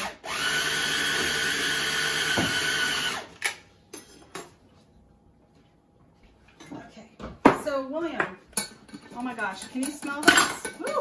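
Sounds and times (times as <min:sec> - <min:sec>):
blender motor running: 0:00.0 - 0:03.3.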